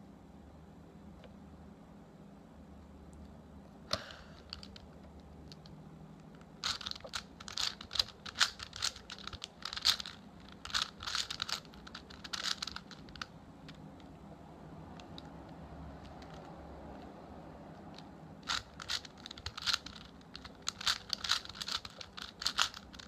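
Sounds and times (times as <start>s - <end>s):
puzzle cube clicking and rattling: 4.3s - 5.7s, 6.4s - 14.1s, 16.0s - 17.1s, 17.9s - 23.0s.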